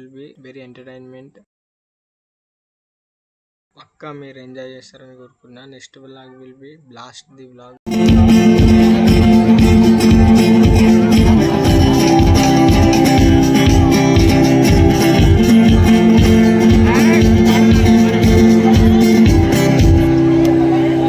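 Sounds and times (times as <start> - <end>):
loud music with beat and guitar: 7.9 - 20.6.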